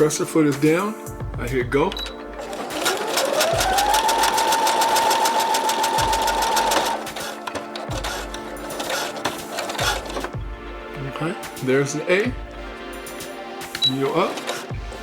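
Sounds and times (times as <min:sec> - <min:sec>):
sewing machine stitching: 0:01.9 - 0:10.4, 0:13.7 - 0:15.0.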